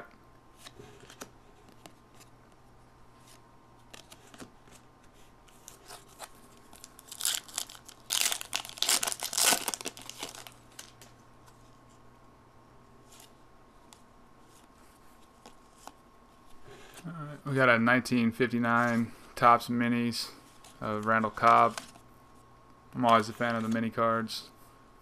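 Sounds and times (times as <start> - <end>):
wrapper crinkling and tearing: 5.6 - 11.1.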